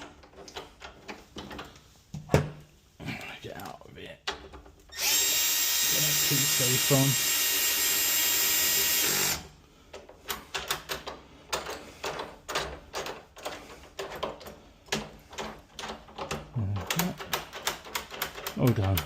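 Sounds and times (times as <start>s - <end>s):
cordless drill running: 4.9s - 9.5s
hardware clicks and taps: 9.9s - 19.0s.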